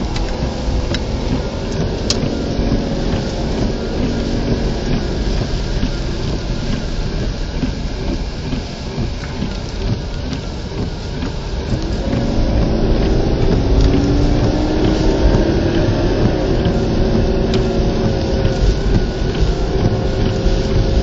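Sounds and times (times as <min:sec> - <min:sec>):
car engine revving up: 0:00.0 - 0:21.0
heavy rain on car roof: 0:00.0 - 0:21.0
road and engine noise: 0:00.0 - 0:21.0.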